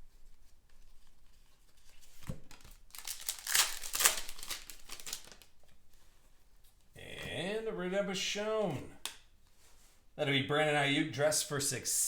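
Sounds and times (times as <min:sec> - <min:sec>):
foil wrapper crinkling and tearing: 0:02.0 - 0:05.7.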